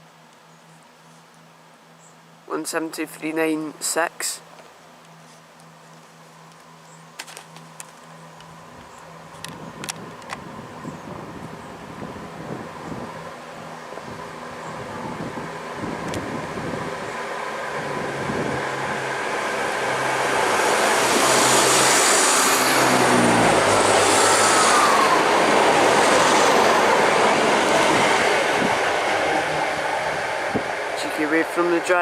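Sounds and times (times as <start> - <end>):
diesel train engines: 3.8 - 32.0
train wheel noise: 14.2 - 32.0.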